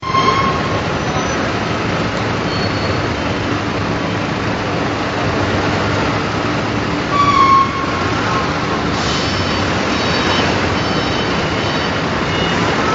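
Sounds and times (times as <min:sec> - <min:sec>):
high metallic squeal: 0:00.0 - 0:01.5, 0:02.5 - 0:03.2, 0:07.1 - 0:12.9
industrial machinery noise: 0:00.0 - 0:12.9.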